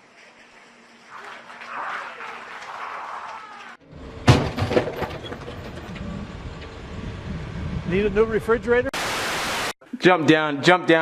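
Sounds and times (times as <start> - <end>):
loud crash: 4.2 - 5.9
clattering hits: 4.2 - 6.0
rushing noise: 8.9 - 9.8.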